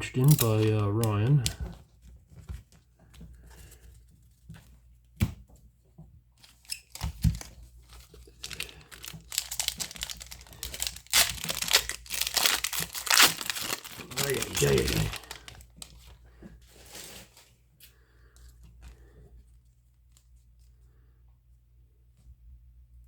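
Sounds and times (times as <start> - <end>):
card pack wrapper crinkling and tearing: 6.4 - 16.1.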